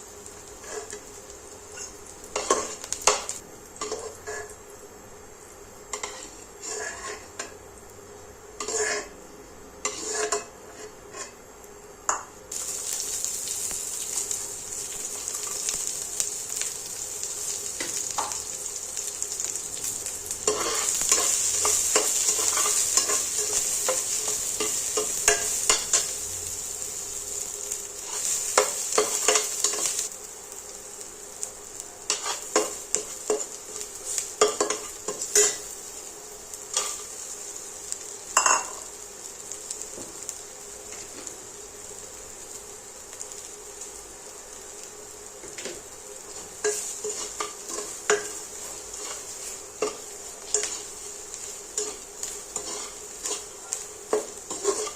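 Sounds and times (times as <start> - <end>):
food sizzling in frying pan: 0.0 - 54.9
utensil stirring and scraping pan: 0.5 - 1.1, 1.8 - 4.6, 5.9 - 7.5, 8.6 - 9.2, 9.8 - 11.4, 20.3 - 30.1, 32.1 - 35.8, 45.4 - 54.9.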